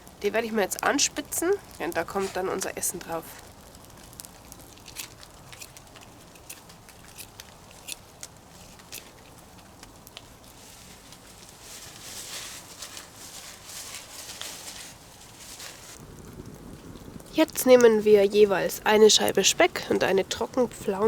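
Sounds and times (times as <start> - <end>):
campfire crackling: 0.0 - 21.0
knife scraping wood: 4.8 - 8.0.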